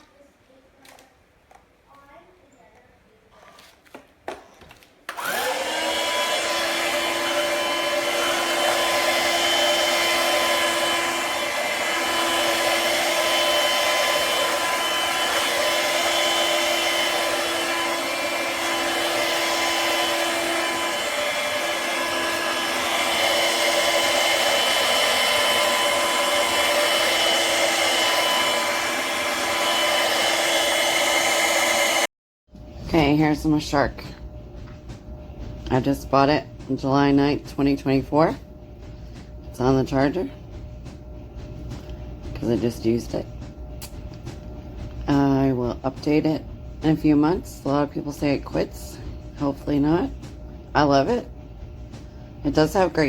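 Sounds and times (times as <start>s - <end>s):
vacuum cleaner motor whining: 5.1s - 32.1s.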